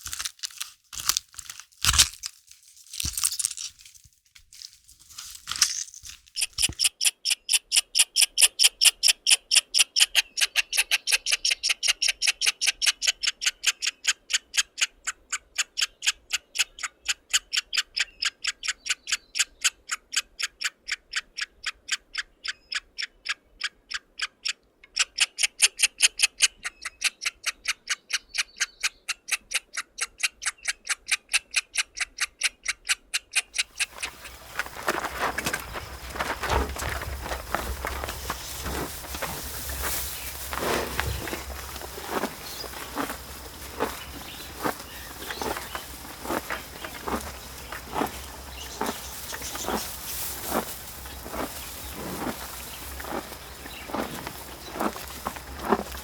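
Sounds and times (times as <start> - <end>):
crunching: 0.0 - 6.9, 33.6 - 56.0.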